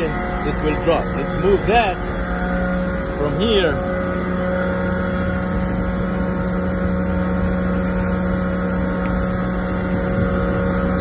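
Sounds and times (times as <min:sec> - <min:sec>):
chiller compressor and fans droning: 0:00.0 - 0:11.0
brief high hiss: 0:07.4 - 0:08.3.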